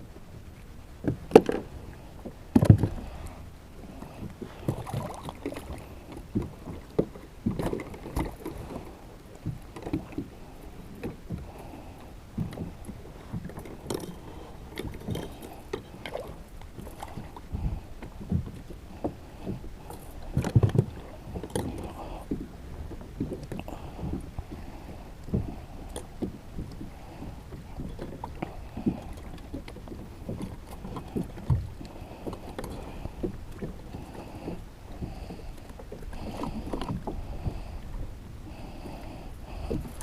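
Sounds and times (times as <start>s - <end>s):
gear knocks and clunks: 2.6s - 3.0s.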